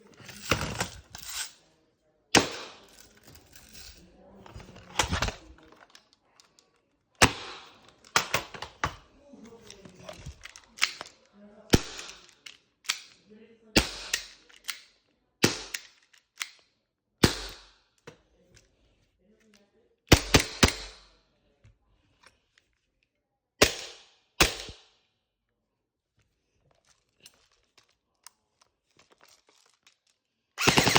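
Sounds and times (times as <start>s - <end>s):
airsoft gun shots: 2.4s - 2.8s, 17.2s - 17.7s, 23.6s - 24.8s.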